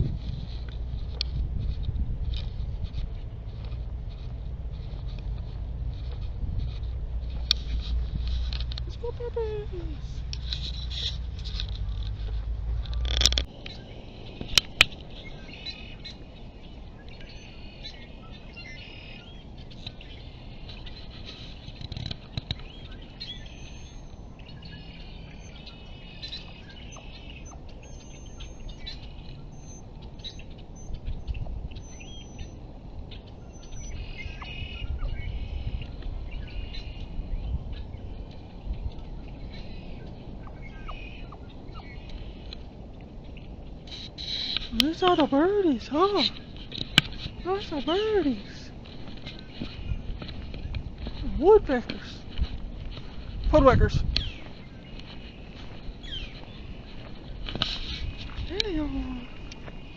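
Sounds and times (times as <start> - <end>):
birds chirping: 0.0 - 59.9
low background rumble: 0.0 - 59.9
sharp clicks: 10.2 - 13.8.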